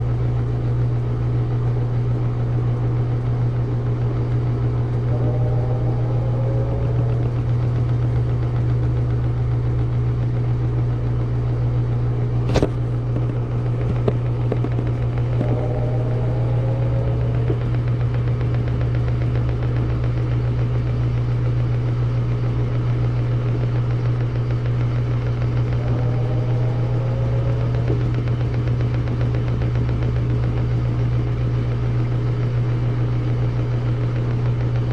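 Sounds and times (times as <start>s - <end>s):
washing drum whirring: 0.0s - 34.9s
washing machine humming: 0.0s - 34.9s.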